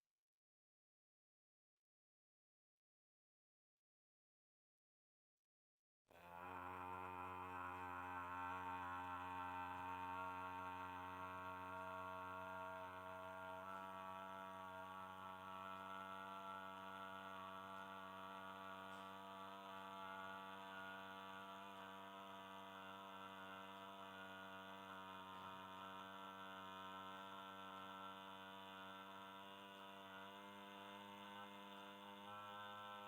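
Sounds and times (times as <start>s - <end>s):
low voice chanting a drone: 6.1s - 25.7s.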